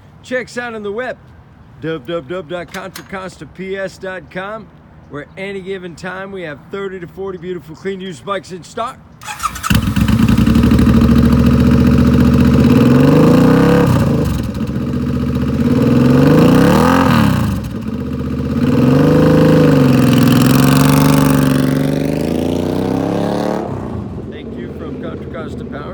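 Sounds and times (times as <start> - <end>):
motorcycle engine revving: 9.2 - 25.6.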